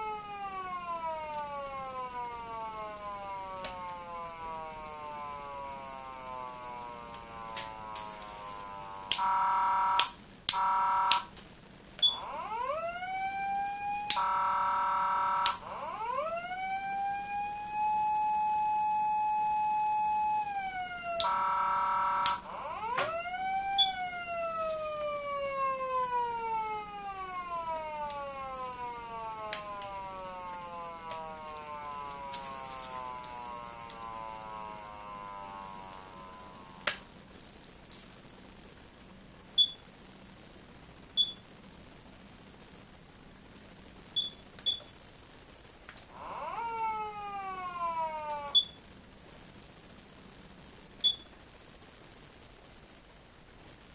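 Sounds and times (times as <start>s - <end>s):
buzzy siren blasts: 0.0s - 11.3s, 12.0s - 37.1s, 46.1s - 48.7s
siren winding up: 0.0s - 11.3s, 12.0s - 37.1s, 46.1s - 48.8s
switch clicks: 10.0s - 11.4s, 22.2s - 23.1s.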